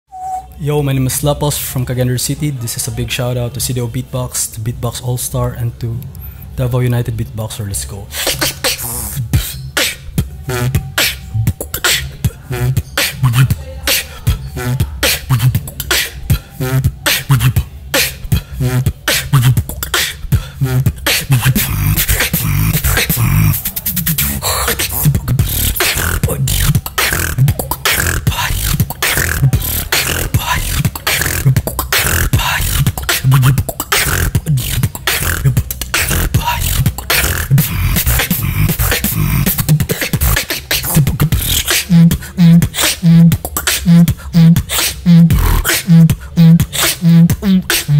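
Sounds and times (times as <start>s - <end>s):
whistled sounds: 0.1s - 0.6s
person beatboxing: 7.9s - 47.9s.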